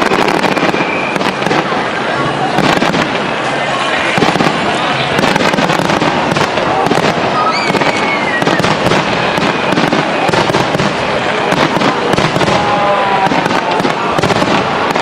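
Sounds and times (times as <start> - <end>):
fireworks bangs and crackles: 0.0 - 15.0
fireworks whistling: 0.0 - 15.0.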